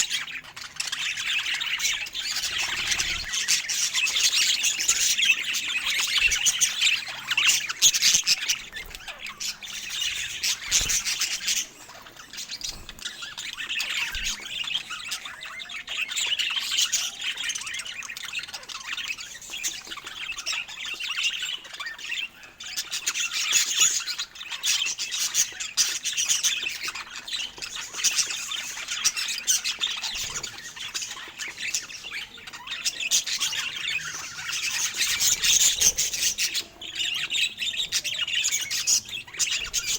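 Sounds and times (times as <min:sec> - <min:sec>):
budgerigars chattering and chirping: 0:00.0 - 0:39.9.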